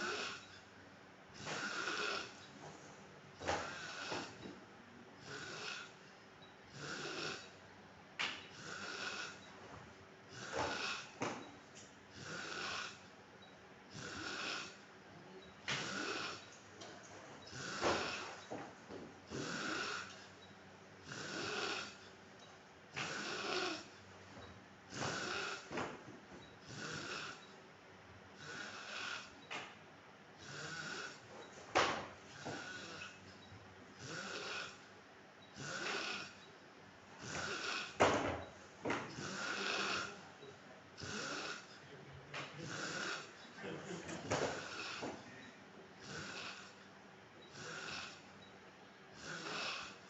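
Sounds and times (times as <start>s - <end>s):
man snoring: 0.0s - 0.5s, 1.4s - 2.4s, 3.4s - 4.5s, 5.2s - 6.0s, 6.7s - 7.6s, 8.5s - 9.4s, 10.3s - 11.4s, 12.1s - 13.1s, 13.9s - 14.8s, 15.7s - 16.4s, 17.5s - 18.4s, 19.3s - 20.2s, 21.0s - 22.1s, 23.0s - 23.9s, 24.9s - 25.8s, 26.6s - 27.4s, 28.4s - 29.4s, 30.4s - 31.2s, 32.3s - 33.2s, 34.0s - 34.9s, 35.6s - 36.4s, 37.2s - 38.3s, 39.0s - 40.4s, 41.0s - 43.5s, 44.3s - 45.4s, 46.0s - 46.8s, 47.5s - 48.2s, 49.2s - 50.0s.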